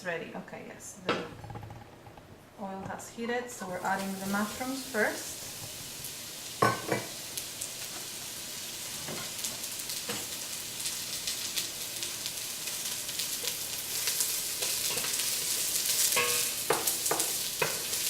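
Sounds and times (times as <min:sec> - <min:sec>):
mushrooms sizzling in oil: 0:03.5 - 0:18.0.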